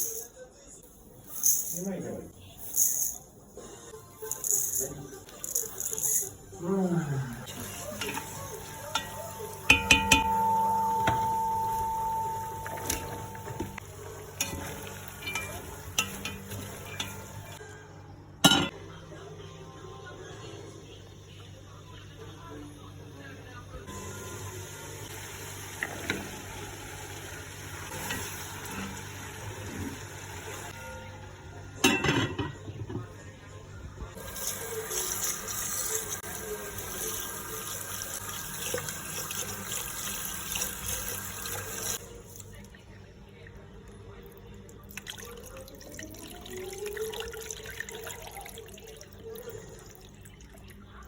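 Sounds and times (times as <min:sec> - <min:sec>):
food frying in a pot: 0:07.4 - 0:12.2, 0:12.8 - 0:17.6, 0:23.9 - 0:30.9, 0:34.2 - 0:42.6
utensil clinking against pot: 0:08.0 - 0:13.8, 0:14.4 - 0:17.6.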